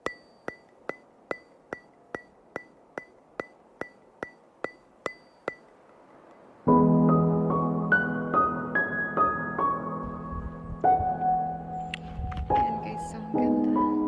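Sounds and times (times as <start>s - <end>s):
sharp ringing ticks: 0.0s - 6.4s
music with sustained piano notes: 6.4s - 14.0s.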